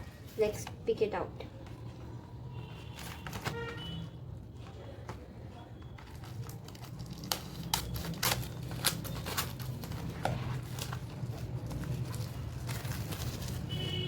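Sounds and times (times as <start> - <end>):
packaging crinkling: 6.0 - 13.9
scissors cutting cardboard: 6.3 - 13.6.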